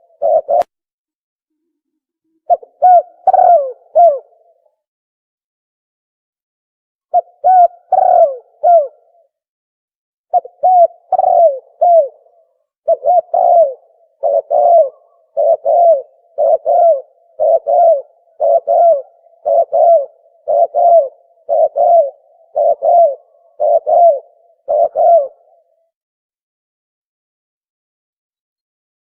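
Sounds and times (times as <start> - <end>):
dove cooing: 0.0 - 0.7, 2.3 - 4.7, 7.1 - 9.3, 10.3 - 25.9.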